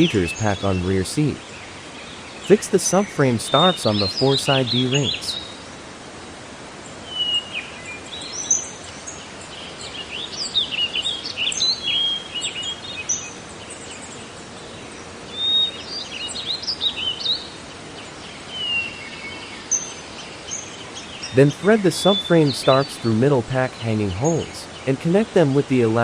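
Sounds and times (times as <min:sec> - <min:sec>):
songbirds chirping and singing: 0:00.0 - 0:01.5, 0:02.1 - 0:05.6, 0:18.1 - 0:26.0
steady background hiss: 0:00.0 - 0:26.0.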